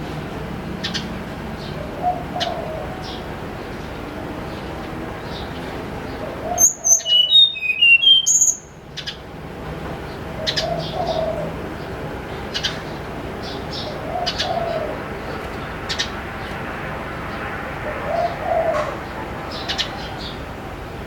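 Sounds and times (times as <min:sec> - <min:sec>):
dove cooing softly: 0:01.7 - 0:03.0, 0:10.4 - 0:11.6, 0:13.8 - 0:15.1, 0:18.0 - 0:19.1
songbird whistled notes: 0:06.6 - 0:08.8.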